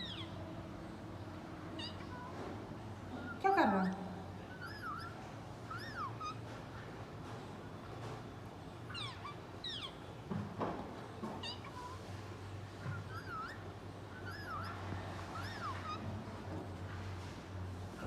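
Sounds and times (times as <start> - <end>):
parrot chirping and whistling: 0.0 - 0.4, 4.5 - 6.4, 12.8 - 16.0
steady low hum: 0.0 - 18.0.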